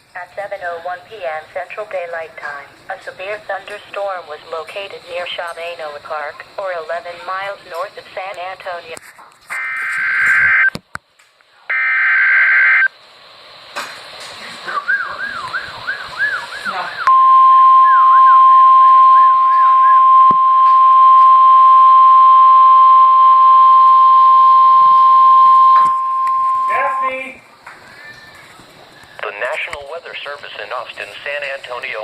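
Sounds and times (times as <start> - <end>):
screechy digital bursts: 9.5 - 10.7, 11.7 - 12.9, 23.0 - 27.4
steady single-pitch alert tone: 11.7 - 12.9, 17.0 - 27.3.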